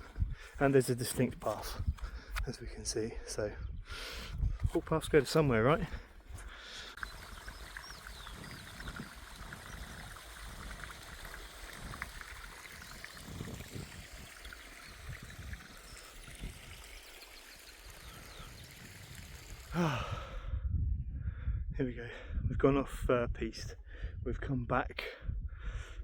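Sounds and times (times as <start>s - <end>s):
running water rushing: 6.8s - 20.1s.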